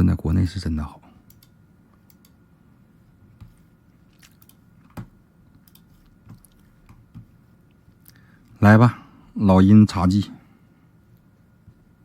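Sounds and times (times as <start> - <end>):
faint clicks and ticks: 1.2 - 2.4.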